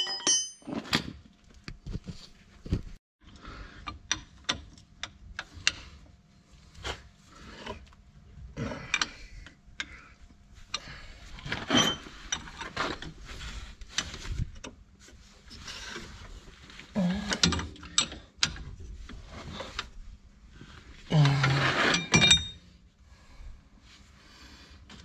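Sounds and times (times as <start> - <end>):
hand tools clinking on metal: 0.0 - 0.8.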